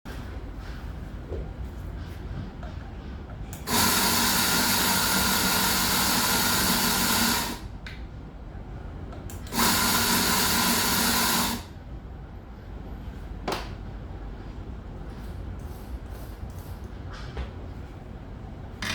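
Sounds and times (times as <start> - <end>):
coffee grinder motor whirring: 3.7 - 7.6, 9.5 - 11.6.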